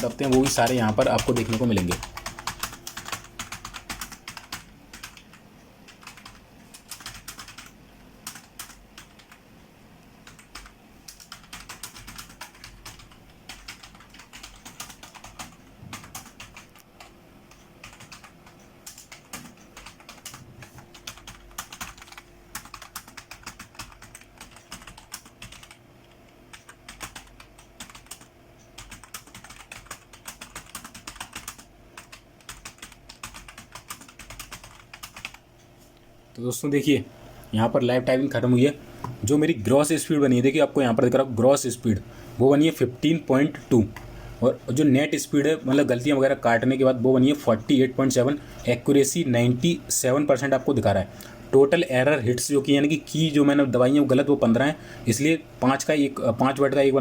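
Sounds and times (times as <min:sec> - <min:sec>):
fast keyboard typing: 0:00.0 - 0:09.4, 0:10.2 - 0:25.8, 0:26.5 - 0:35.4.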